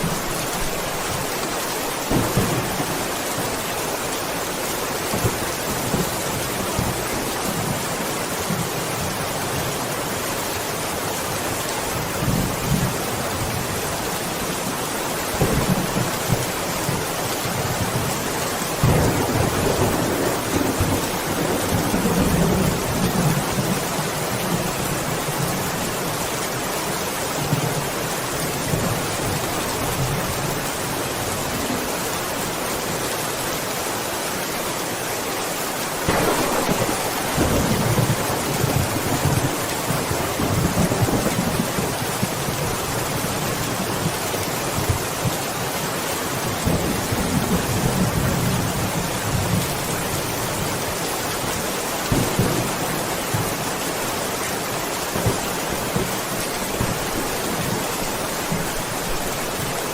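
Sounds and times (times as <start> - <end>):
steady rain hiss: 0.0 - 59.9
thunder rumbling: 2.1 - 4.4, 18.8 - 23.8, 36.0 - 42.3.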